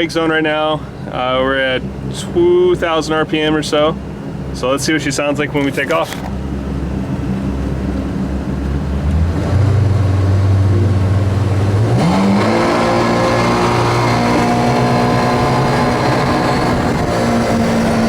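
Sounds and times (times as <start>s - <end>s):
jet boat engines revving: 0.0s - 18.0s.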